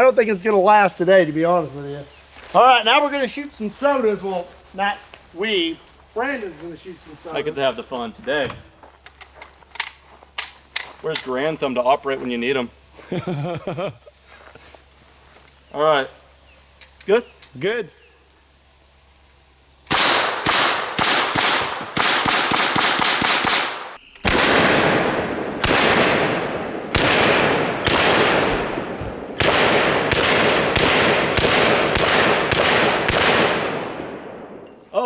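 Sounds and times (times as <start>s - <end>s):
submachine gun shots: 19.9s - 28.8s, 29.4s - 34.1s.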